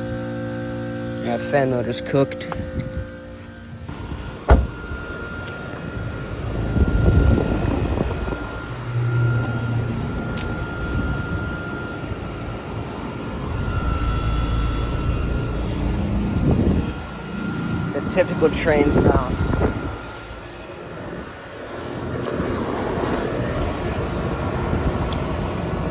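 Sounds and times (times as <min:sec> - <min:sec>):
compressor hum and fan rumble: 0:00.0 - 0:25.9
thin high whine: 0:00.0 - 0:25.9.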